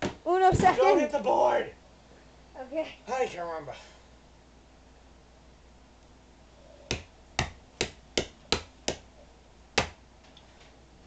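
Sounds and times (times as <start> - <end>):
knocks on hard plastic: 6.9 - 9.0, 9.8 - 10.0.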